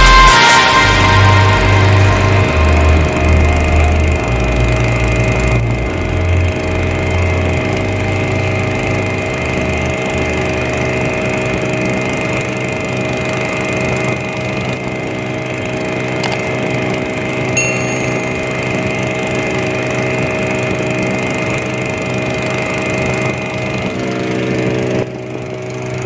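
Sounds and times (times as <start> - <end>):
background music bass line: 0.0 - 9.9
small boat engine running: 0.0 - 26.0.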